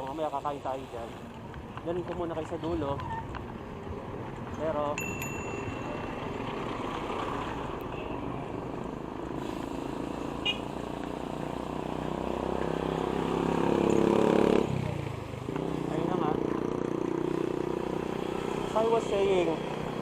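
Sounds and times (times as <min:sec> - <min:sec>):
road traffic: 0:00.0 - 0:20.0
vehicle engine: 0:05.6 - 0:20.0.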